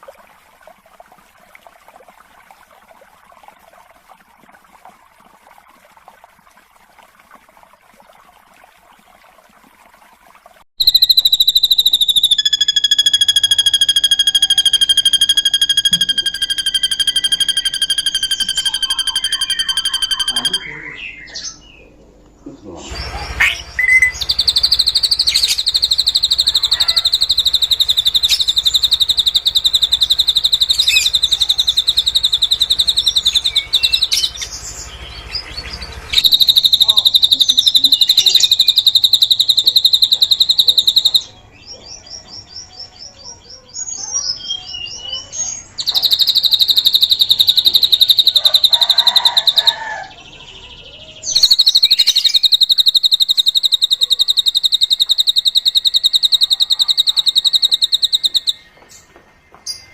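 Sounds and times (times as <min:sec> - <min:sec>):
bird fast high trills: 0:10.8 - 0:21.4, 0:23.4 - 0:34.6, 0:36.1 - 0:41.3, 0:45.8 - 0:50.2, 0:51.3 - 0:58.6.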